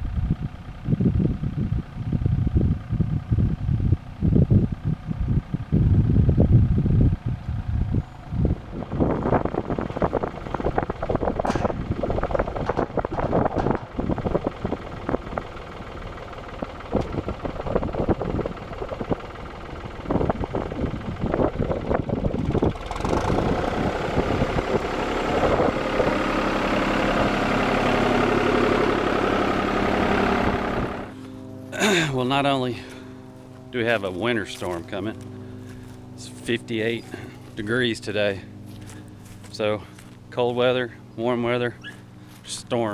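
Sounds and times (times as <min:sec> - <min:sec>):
tractor engine running: 0:00.0 - 0:42.9
clanks and rattles: 0:09.8 - 0:23.2.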